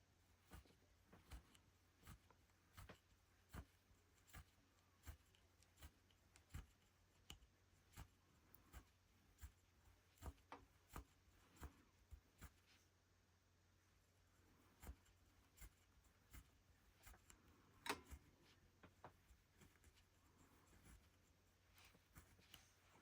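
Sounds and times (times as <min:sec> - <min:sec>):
rug hook soft taps: 0:17.1 - 0:19.9.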